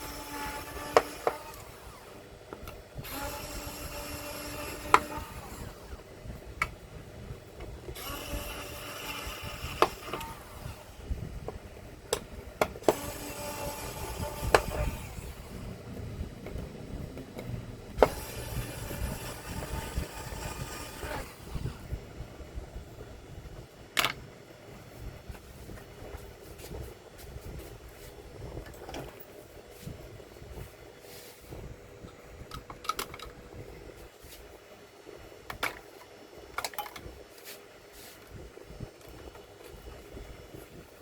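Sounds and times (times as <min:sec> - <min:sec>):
sharp clicks and knocks: 0:24.0 - 0:24.2, 0:32.5 - 0:33.4.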